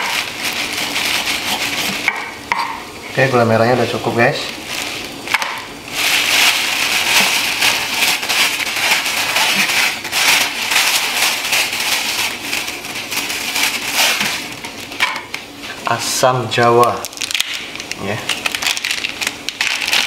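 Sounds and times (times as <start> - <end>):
snack packet crinkling: 0.0 - 2.0, 4.4 - 15.0, 16.8 - 20.0.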